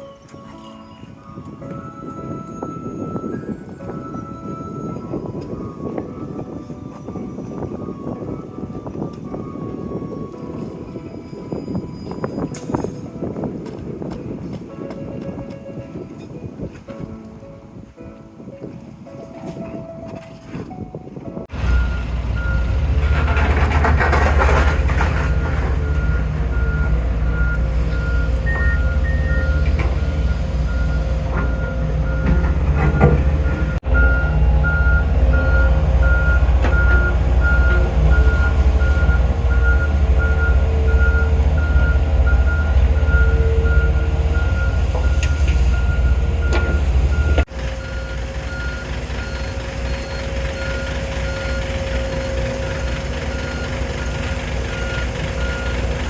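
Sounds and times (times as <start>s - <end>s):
reversing alarm beeping: 0.0s - 12.8s, 25.2s - 56.0s
diesel engine rumble: 0.1s - 14.7s, 21.3s - 56.0s.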